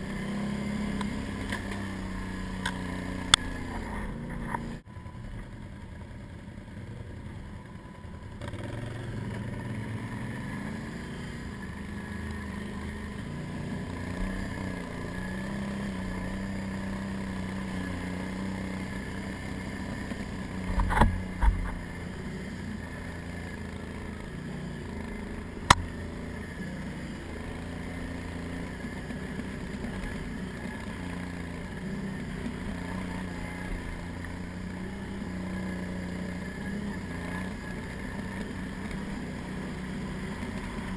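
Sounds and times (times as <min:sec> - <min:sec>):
atv engine running: 0:00.0 - 0:40.9
sharp click: 0:25.7 - 0:25.9.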